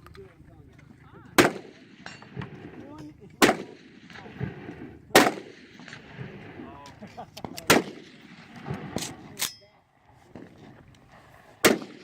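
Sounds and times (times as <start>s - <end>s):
suppressed gunshots: 1.4s - 2.8s, 3.4s - 6.6s, 7.4s - 9.5s, 11.6s - 12.0s.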